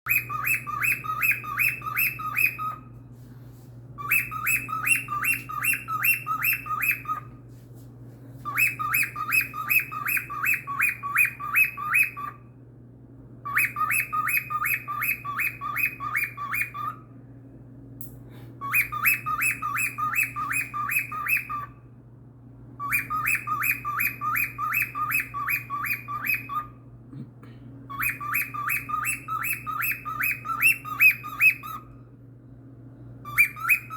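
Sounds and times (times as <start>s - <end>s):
cockatiel chirping: 0.1s - 3.0s, 4.0s - 7.3s, 8.4s - 12.4s, 13.4s - 17.1s, 18.6s - 21.8s, 22.8s - 26.9s, 27.9s - 32.0s, 33.2s - 33.9s
steady low hum: 0.1s - 33.9s.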